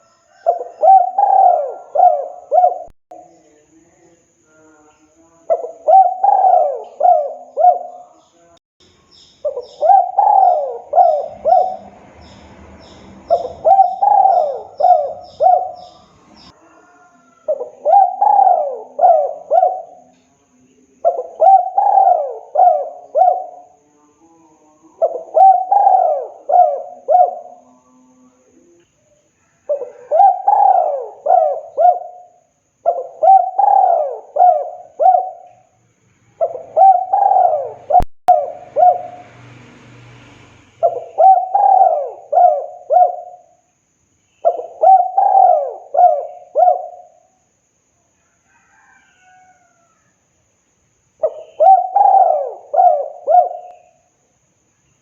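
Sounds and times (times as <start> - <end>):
dove cooing: 0.0 - 3.3, 5.5 - 8.3, 9.4 - 20.2, 21.0 - 28.8, 29.5 - 35.7, 36.4 - 39.3, 40.8 - 43.6, 44.4 - 47.4, 51.2 - 54.1.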